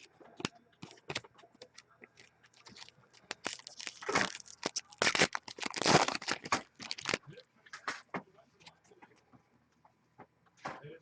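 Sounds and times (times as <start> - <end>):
cards riffling: 0.4 - 7.2
wrappers crinkling and tearing: 2.1 - 7.4.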